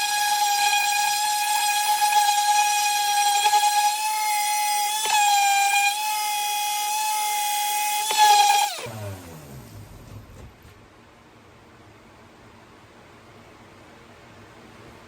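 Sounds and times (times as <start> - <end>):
electric sander whine: 0.0 - 10.6
motor winding down: 0.0 - 10.6.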